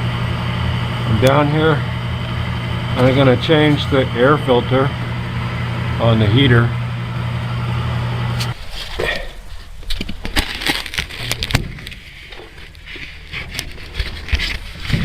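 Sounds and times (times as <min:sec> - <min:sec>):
furnace humming: 0:00.0 - 0:15.0.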